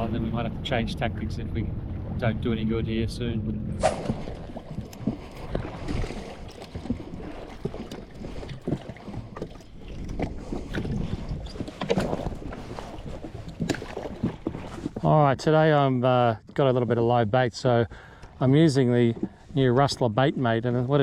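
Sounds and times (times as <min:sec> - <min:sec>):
water lapping against a hull: 0:00.0 - 0:21.0
wind on the microphone: 0:09.8 - 0:15.0.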